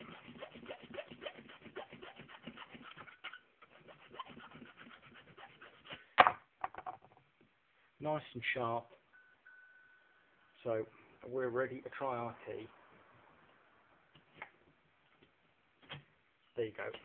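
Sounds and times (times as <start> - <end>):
file rasping on metal: 0.0 - 6.0.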